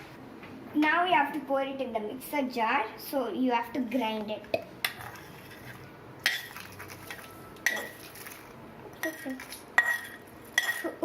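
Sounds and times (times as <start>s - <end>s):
metal spoon clinking on cookware: 6.2s - 11.0s.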